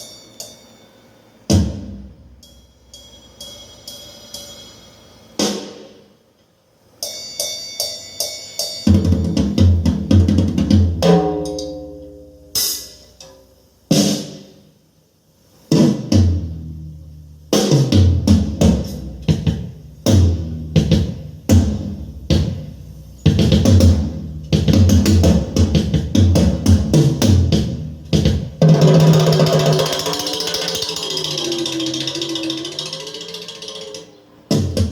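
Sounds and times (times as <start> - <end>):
drum-heavy music through loudspeaker: 1.5 - 2.3, 8.0 - 11.7, 13.9 - 14.7, 15.7 - 33.8, 34.5 - 34.9.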